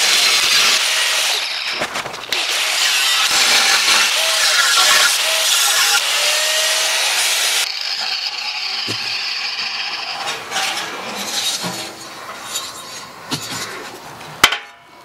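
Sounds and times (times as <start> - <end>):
angle grinder cutting steel: 0.0 - 11.6.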